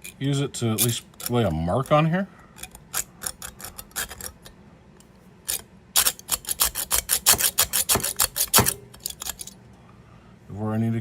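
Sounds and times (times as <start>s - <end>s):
hacksaw rasping on metal: 2.6s - 4.4s, 5.5s - 9.5s.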